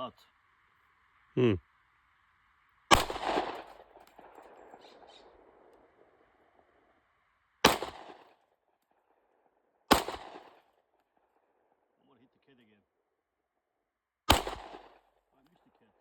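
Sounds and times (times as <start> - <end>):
pistol shots with echo: 2.9 - 5.6, 7.6 - 8.3, 9.9 - 10.6, 14.3 - 15.0.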